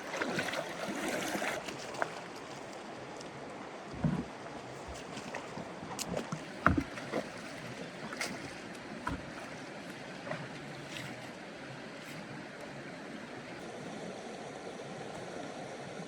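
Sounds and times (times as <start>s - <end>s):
water splashing: 0.0s - 2.8s, 4.0s - 11.4s
water rushing: 0.0s - 16.0s
boat knocking: 4.9s - 9.7s.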